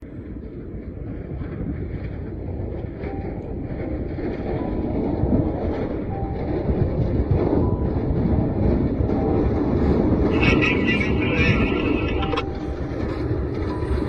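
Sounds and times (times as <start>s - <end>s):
heavy machinery engine rumbling: 0.1s - 14.0s.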